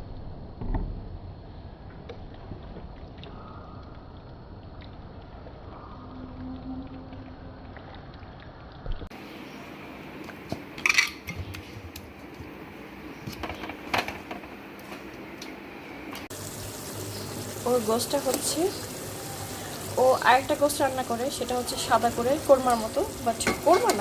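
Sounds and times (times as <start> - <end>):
cookware clinking: 10.8 - 11.3, 23.3 - 24.0.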